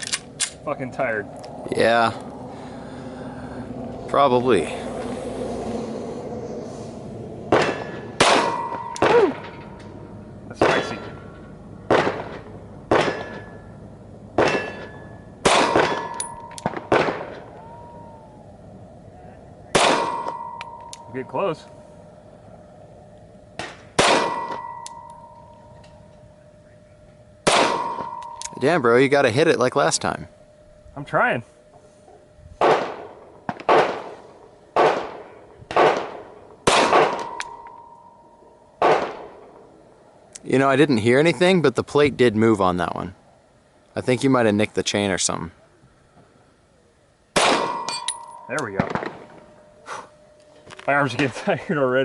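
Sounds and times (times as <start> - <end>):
pistol shots: 7.5 - 9.2, 11.9 - 13.5, 14.4 - 17.5, 19.7 - 20.4, 23.6 - 24.8, 27.4 - 28.4, 32.6 - 34.2, 34.8 - 37.6, 38.8 - 39.4, 47.4 - 49.4
steel plate ringing: 7.7 - 10.1, 13.0 - 13.8, 14.4 - 16.9, 19.8 - 21.9, 24.0 - 32.0, 36.9 - 38.8, 47.4 - 50.4.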